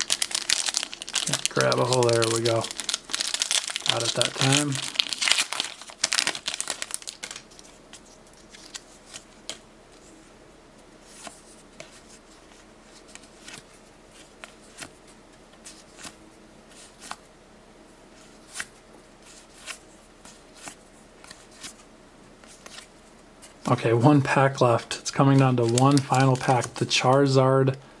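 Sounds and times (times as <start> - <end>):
foil wrapper crinkling: 0.0 - 9.2, 23.7 - 27.4.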